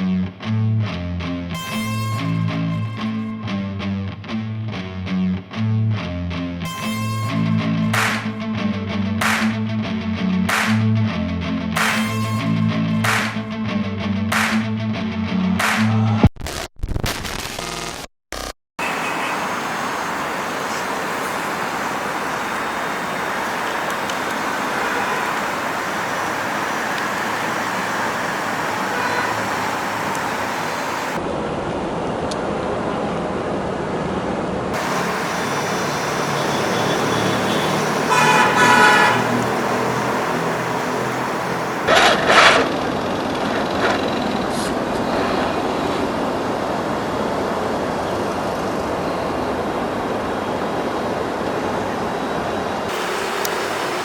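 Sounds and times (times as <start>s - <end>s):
tyres over rough ground: 39.2s - 44.8s.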